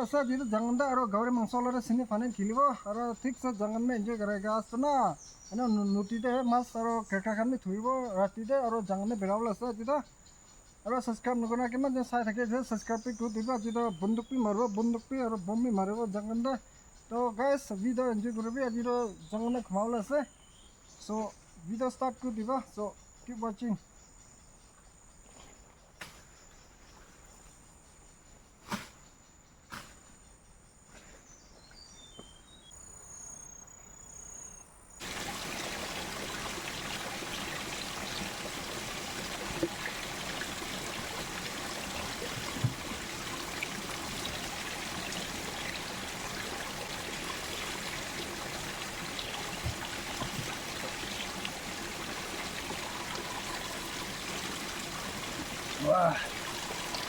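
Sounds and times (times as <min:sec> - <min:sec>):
stream water rushing: 0:35.0 - 0:57.0.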